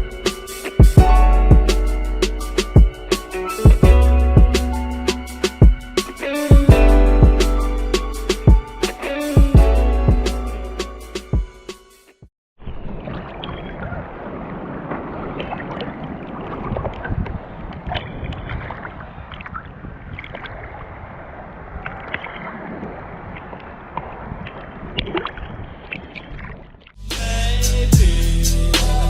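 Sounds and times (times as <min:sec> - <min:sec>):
water sloshing and splashing: 0:12.6 - 0:27.0.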